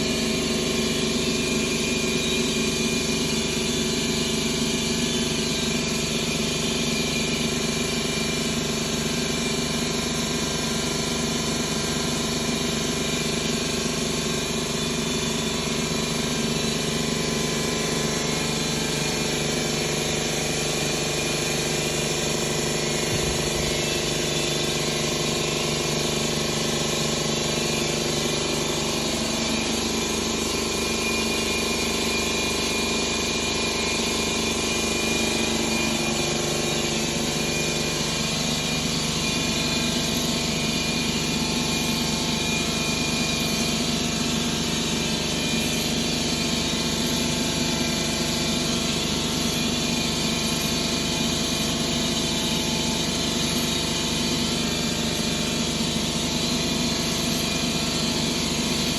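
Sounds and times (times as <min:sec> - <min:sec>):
car engine running: 0:22.9 - 0:24.6.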